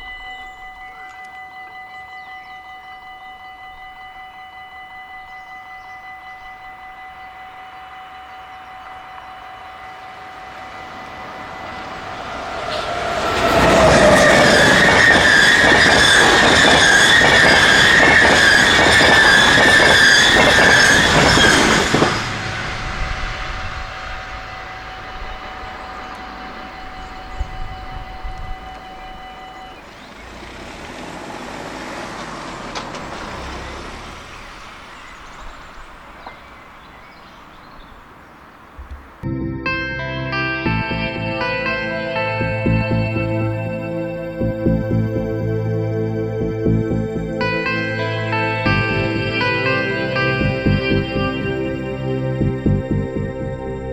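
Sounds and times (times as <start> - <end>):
level crossing bells ringing: 0.0 - 30.6, 39.7 - 53.5
train passing: 0.0 - 53.9.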